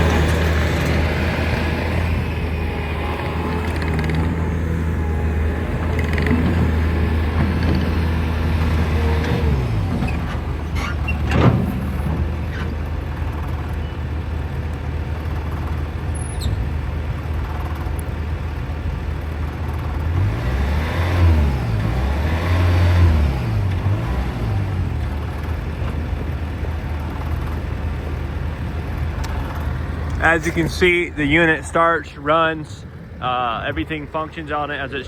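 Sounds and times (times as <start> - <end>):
metal clank: 0.0 - 12.9
diesel engine running: 0.0 - 35.0.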